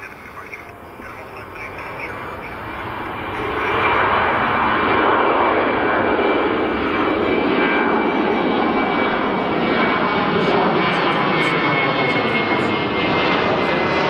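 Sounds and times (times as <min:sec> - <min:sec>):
faint high whine: 0:00.0 - 0:13.8
jet engines roaring: 0:00.0 - 0:14.0.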